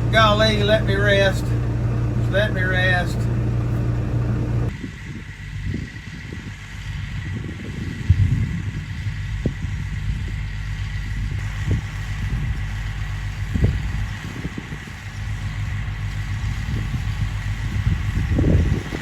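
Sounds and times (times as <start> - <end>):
thin steady whine: 0.0 - 6.6
tractor engine running: 0.0 - 19.0.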